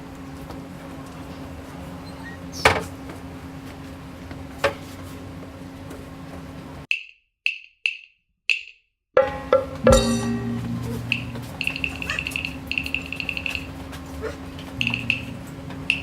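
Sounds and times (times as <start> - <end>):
sharp knocks: 9.2 - 11.1
steady hum: 9.2 - 16.0.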